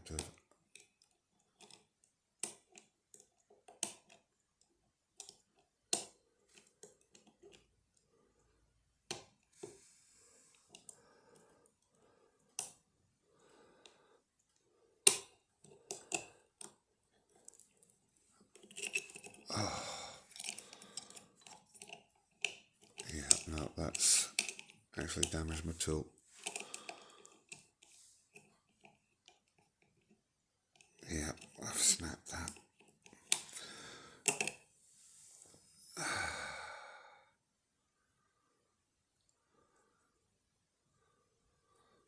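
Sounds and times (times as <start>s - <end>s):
lock picks clicking and scraping: 0.1s - 4.2s, 5.2s - 7.7s, 15.0s - 19.5s, 20.2s - 33.6s, 34.2s - 34.7s
scraping and rattling in lock: 18.5s - 19.4s.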